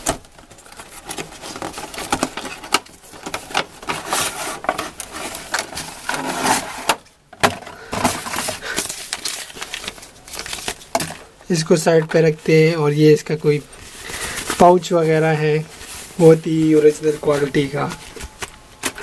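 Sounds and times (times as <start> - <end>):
sharp clicks of packaging: 0.0 - 11.3
packaging rubbing and scraping: 0.0 - 19.0.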